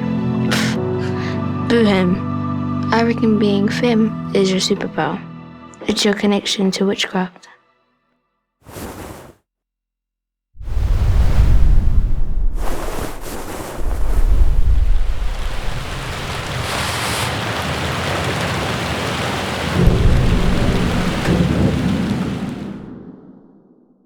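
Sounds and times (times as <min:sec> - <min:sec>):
steady rain: 0:12.6 - 0:22.9
deep rolling thunder: 0:14.0 - 0:16.6, 0:17.4 - 0:23.5.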